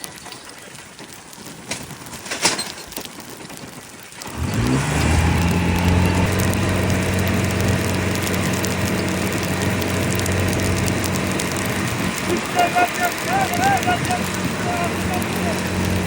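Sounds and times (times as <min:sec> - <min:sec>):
cracking and snapping: 0:00.0 - 0:16.0
heavy machine engine running: 0:04.2 - 0:16.0.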